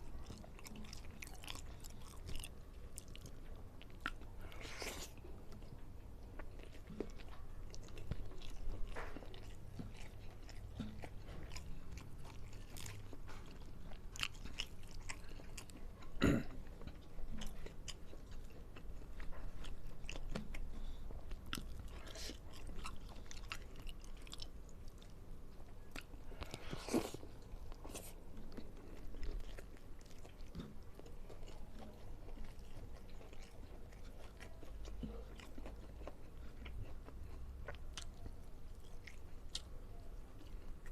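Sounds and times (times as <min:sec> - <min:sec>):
crunching raw vegetables: 0:00.0 - 0:40.9
person chewing food: 0:00.0 - 0:40.9.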